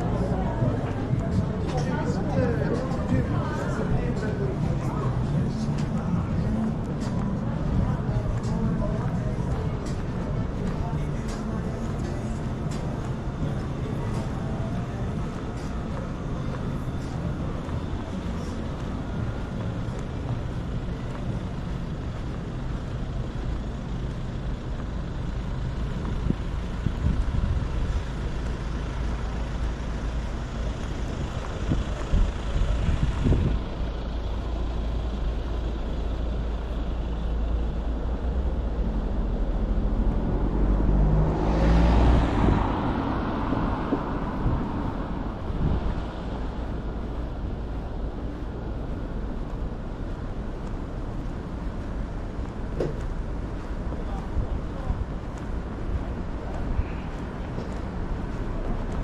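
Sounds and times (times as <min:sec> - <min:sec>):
traffic engine rumble: 0:00.0 - 0:59.0
loud vehicle passing: 0:39.1 - 0:47.8.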